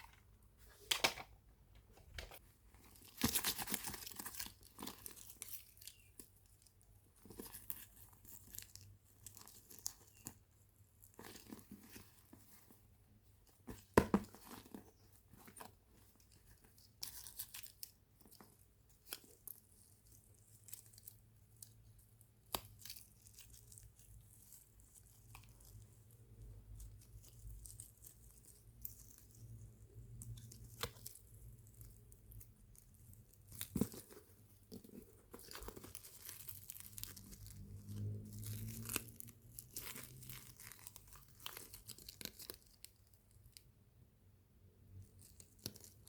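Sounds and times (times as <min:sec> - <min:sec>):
packaging crinkling and tearing: 0:02.8 - 0:10.4, 0:22.4 - 0:43.6.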